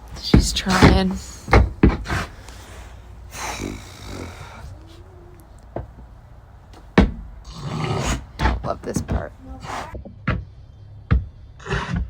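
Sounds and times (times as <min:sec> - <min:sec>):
sow breathing hard: 0:00.0 - 0:05.7, 0:07.5 - 0:08.6, 0:09.5 - 0:10.0
sow grunting: 0:00.3 - 0:06.1, 0:07.4 - 0:10.0.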